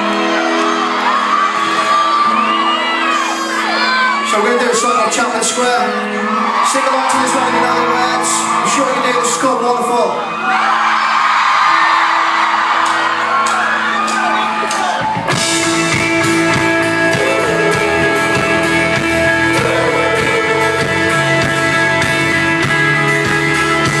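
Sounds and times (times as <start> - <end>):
crowd cheering: 0.0 - 24.0
live pop-rock band playing: 0.0 - 24.0
drums and bass: 14.9 - 24.0.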